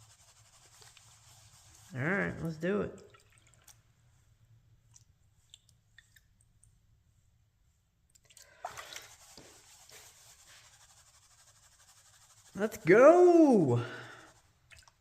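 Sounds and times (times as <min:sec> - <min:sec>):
water sloshing in a pan: 0:03.0 - 0:04.1, 0:08.3 - 0:10.0.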